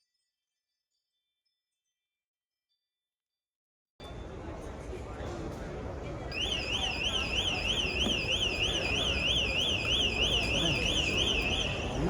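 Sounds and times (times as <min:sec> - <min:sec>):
background murmur: 0:04.0 - 0:12.0.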